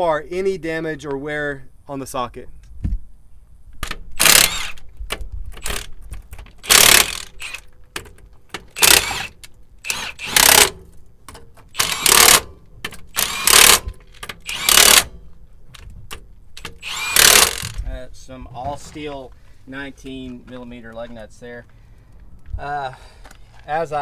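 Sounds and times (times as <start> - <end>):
power tool driving lug nut: 3.8 - 17.9.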